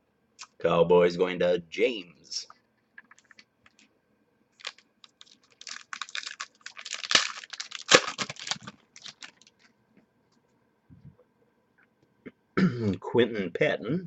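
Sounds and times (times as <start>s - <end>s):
hands clicking and rustling on table: 3.0s - 3.9s.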